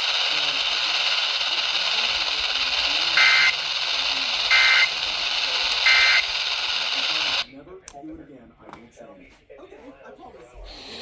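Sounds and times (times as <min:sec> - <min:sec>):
two-tone warbling data bursts: 0:00.0 - 0:07.5
radio static: 0:00.0 - 0:07.6.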